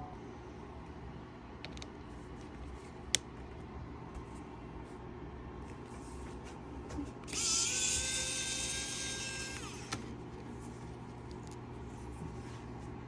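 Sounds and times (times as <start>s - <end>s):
electric screwdriver whine: 7.3s - 10.0s.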